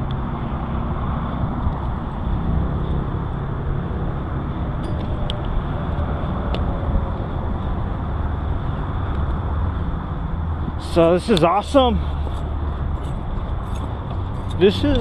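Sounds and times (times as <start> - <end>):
bicycle rolling rumble: 12.0 - 15.0.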